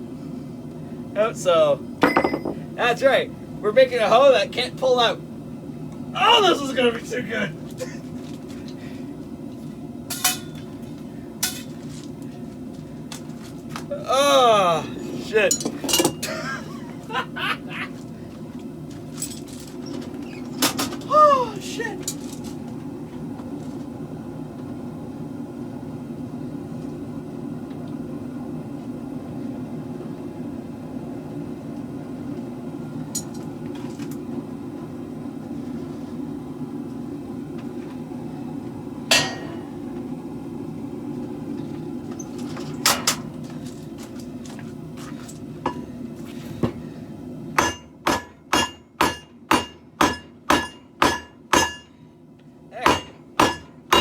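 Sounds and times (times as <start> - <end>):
hammer blows on anvil: 2.0 - 2.6, 10.1 - 10.6, 39.1 - 39.7, 47.6 - 51.9, 52.8 - 54.0
metallic clinks: 2.0 - 2.6
low rushing hum: 8.7 - 20.3, 20.9 - 47.6.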